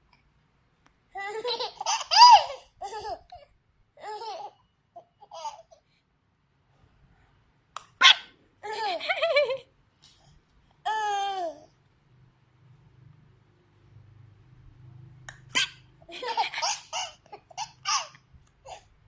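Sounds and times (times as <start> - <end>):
baby laughing: 1.2 - 5.8, 8.0 - 9.7, 15.4 - 18.9.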